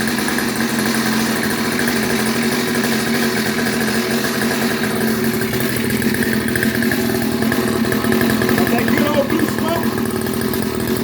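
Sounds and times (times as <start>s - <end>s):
two-stroke engine idling: 0.0s - 11.0s.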